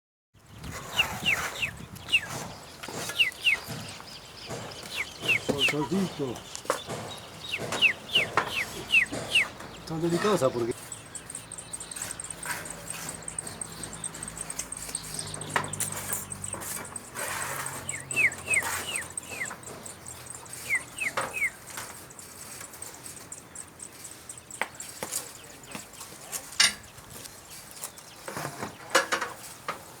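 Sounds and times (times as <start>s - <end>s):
small bird chirping: 0.4s - 29.6s
scattered clicks: 10.7s - 25.9s.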